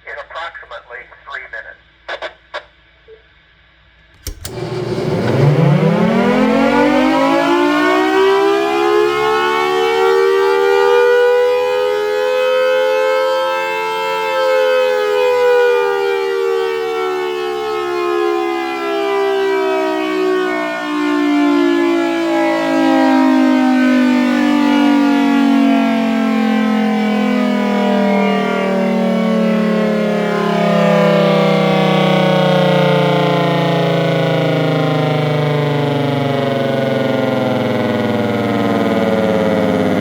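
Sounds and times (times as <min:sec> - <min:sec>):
click: 0:04.0 - 0:05.4
warning siren wailing: 0:04.4 - 0:40.0.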